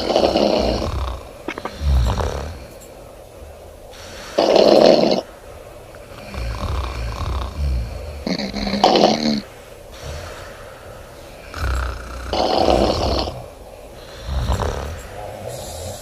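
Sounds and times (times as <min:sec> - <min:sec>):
woman snoring loudly: 0:00.0 - 0:02.7, 0:04.4 - 0:05.3, 0:06.1 - 0:10.4, 0:11.5 - 0:16.0
quiet breathing: 0:00.0 - 0:16.0.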